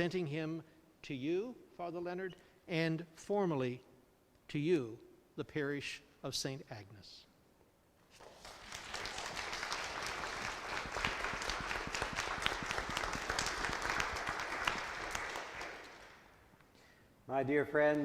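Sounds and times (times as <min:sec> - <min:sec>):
crowd applauding: 0:08.2 - 0:16.3.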